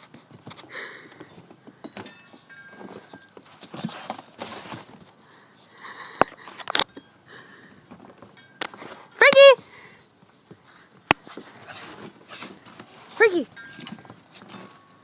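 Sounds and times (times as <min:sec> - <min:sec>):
scuffling noises: 0:02.4 - 0:06.7, 0:10.2 - 0:15.0.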